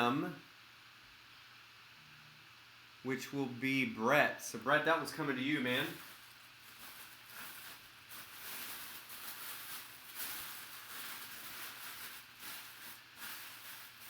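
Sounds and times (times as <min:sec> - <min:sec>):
low electrical hum: 0:00.0 - 0:14.0
rustling handling noise: 0:04.8 - 0:14.0.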